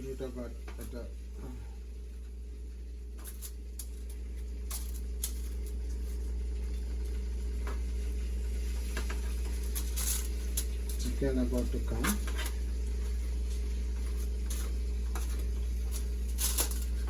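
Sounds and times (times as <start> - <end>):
kitchen items clicking and knocking: 14.0 - 17.0.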